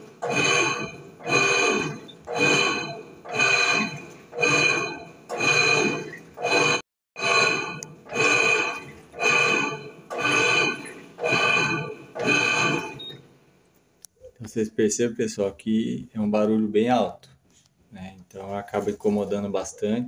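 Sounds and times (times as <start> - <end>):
loud whining noise: 0.0 - 13.2
washing machine agitating: 0.0 - 13.2.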